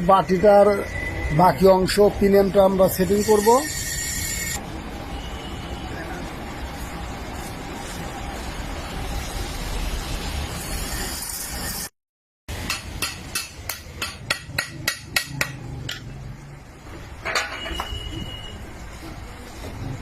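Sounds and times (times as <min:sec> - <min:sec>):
workshop noise: 0:00.0 - 0:11.9, 0:12.5 - 0:20.0
hammer tapping metal: 0:12.5 - 0:16.1.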